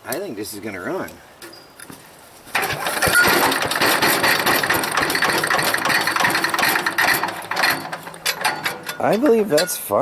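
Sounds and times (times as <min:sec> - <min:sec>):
small engine cranking and sputtering: 0:02.6 - 0:08.0.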